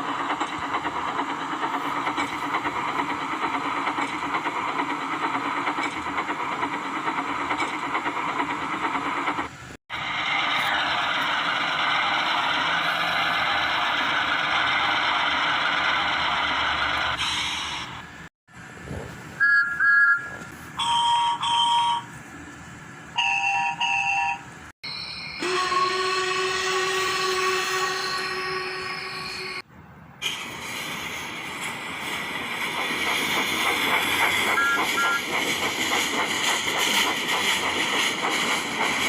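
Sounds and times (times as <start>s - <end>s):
steam train rushing noise: 0.0s - 19.4s, 24.8s - 39.0s
steam whistle toots: 24.9s - 29.6s, 34.6s - 35.2s
long held steam whistle: 25.4s - 29.6s.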